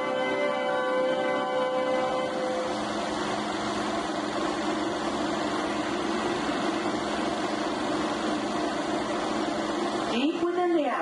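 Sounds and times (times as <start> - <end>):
film music: 0.0 - 3.1
film projector whirring: 0.0 - 11.0.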